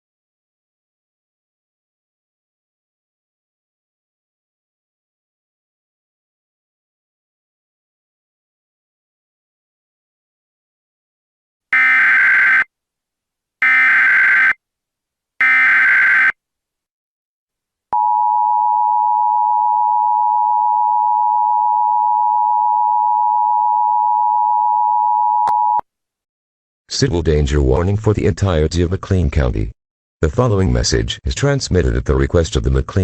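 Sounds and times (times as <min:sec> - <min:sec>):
digital data tone bursts: 0:11.8 - 0:12.7, 0:13.6 - 0:14.6, 0:15.4 - 0:16.3.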